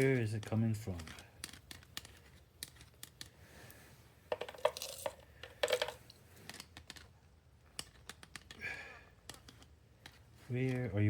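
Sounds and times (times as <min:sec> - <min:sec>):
metallic clinking and rattling: 0:04.3 - 0:07.1.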